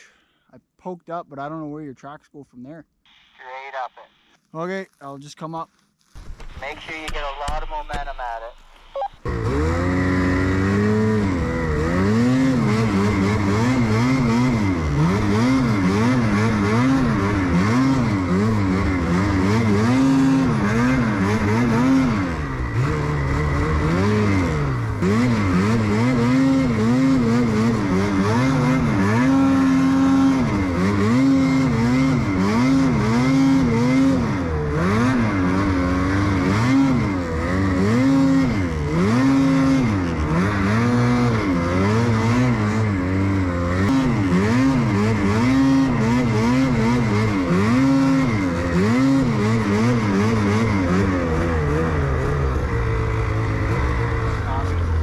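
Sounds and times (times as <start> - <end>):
snowmobile engine revving: 6.6 - 55.0.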